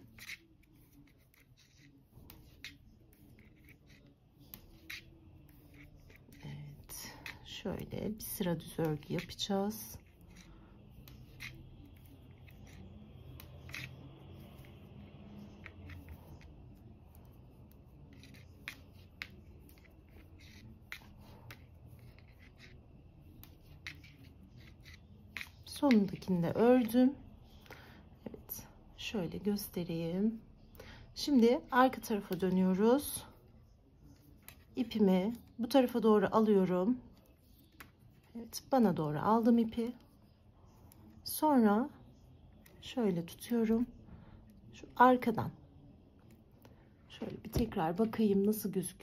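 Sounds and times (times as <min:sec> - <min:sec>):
yarn rubbing: 0:00.0 - 0:27.2.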